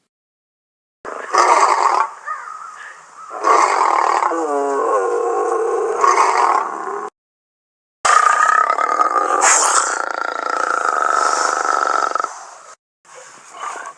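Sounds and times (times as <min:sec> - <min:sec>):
tiger growling: 0:01.1 - 0:02.2, 0:03.3 - 0:07.1, 0:08.1 - 0:12.4
tiger roaring: 0:01.1 - 0:02.2, 0:03.3 - 0:07.1, 0:08.1 - 0:12.4.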